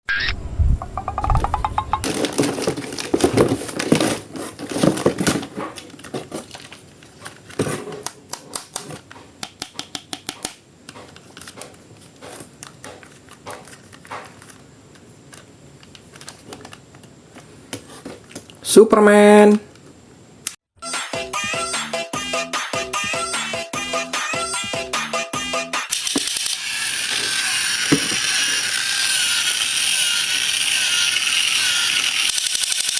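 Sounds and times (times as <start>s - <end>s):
plastic packaging crinkling: 2.0s - 7.9s.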